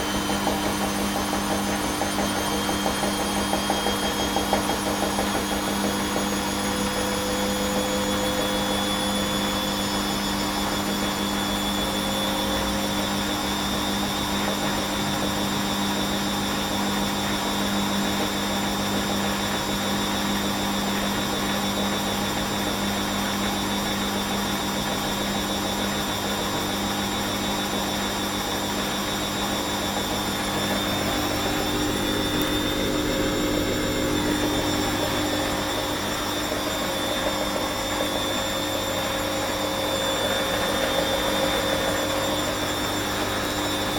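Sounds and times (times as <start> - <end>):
washing machine drum humming: 0.0 - 16.2, 16.8 - 43.9
washing machine motor whine: 0.0 - 43.9.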